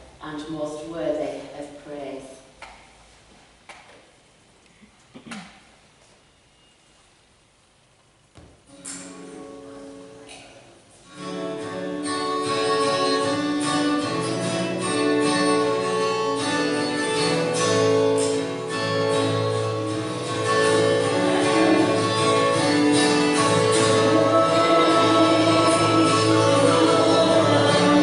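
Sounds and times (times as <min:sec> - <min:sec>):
instrumental worship music: 0:11.6 - 0:28.0.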